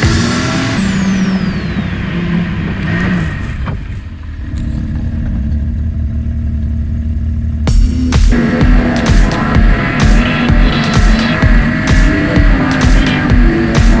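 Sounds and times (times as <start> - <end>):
snowmobile engine revving: 0.0 - 4.0, 7.9 - 14.0.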